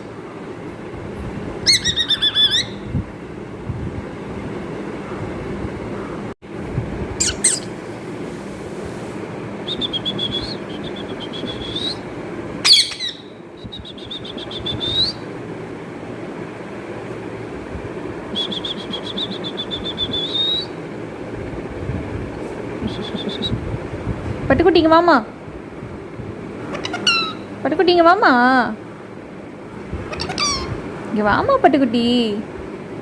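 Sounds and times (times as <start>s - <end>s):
parrot squawking and trilling: 1.6s - 2.9s, 7.2s - 7.8s, 12.6s - 13.4s, 26.7s - 27.5s, 30.1s - 30.8s.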